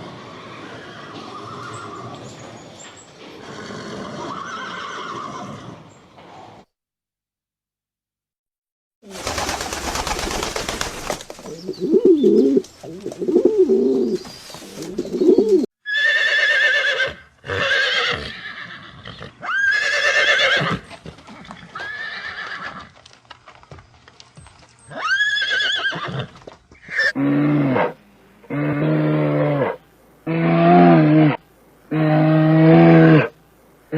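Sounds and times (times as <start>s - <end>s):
higher arching animal calls: 11.5s - 20.9s, 24.8s - 33.9s.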